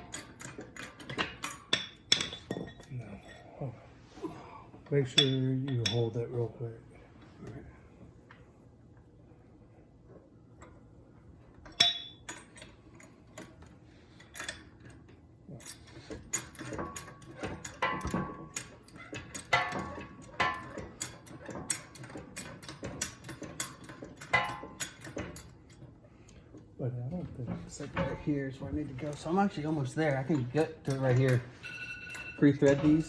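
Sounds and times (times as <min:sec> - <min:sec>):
metal bolts clinking on steel: 0:00.0 - 0:03.5, 0:11.6 - 0:25.8, 0:28.9 - 0:33.0.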